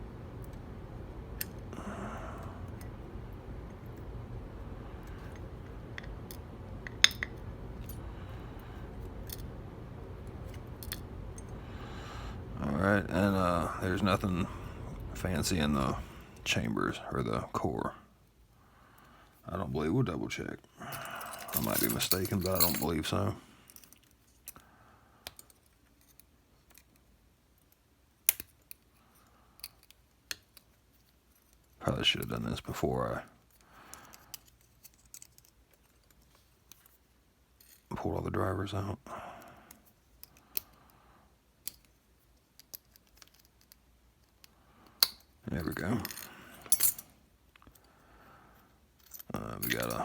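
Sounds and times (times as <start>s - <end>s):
metallic clicks of lock parts: 5.3s - 7.4s, 25.2s - 29.0s, 29.6s - 30.8s, 33.4s - 36.9s, 40.2s - 40.8s, 41.6s - 45.4s.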